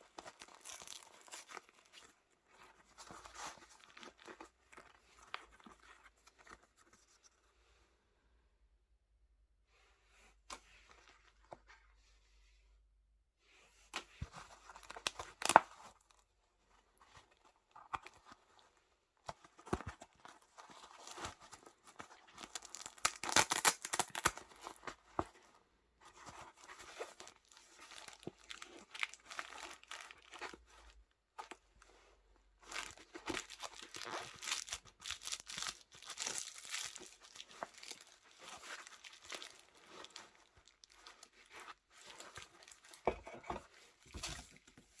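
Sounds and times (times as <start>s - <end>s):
wrapping crinkling and tearing: 0.1s - 2.1s, 20.2s - 25.0s, 26.5s - 30.9s, 32.6s - 43.1s.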